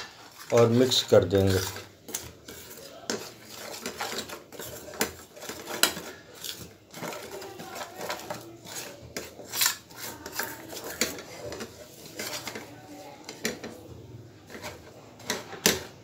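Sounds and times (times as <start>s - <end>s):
spoon scraping against a pan: 0.0s - 16.0s.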